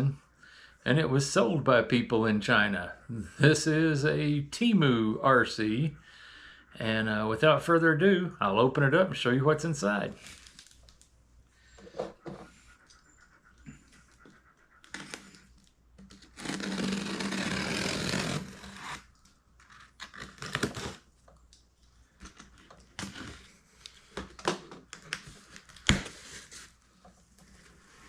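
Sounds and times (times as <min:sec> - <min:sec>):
rough scraping on cardboard: 0:14.9 - 0:15.5, 0:16.1 - 0:19.1.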